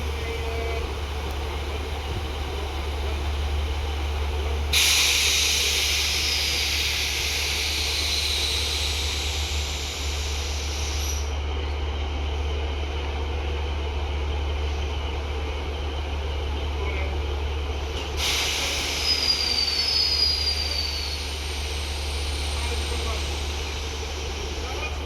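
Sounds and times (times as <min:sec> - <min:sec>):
diesel train engine idling: 0:00.0 - 0:25.0
loud air hiss: 0:04.7 - 0:11.3, 0:18.2 - 0:24.6.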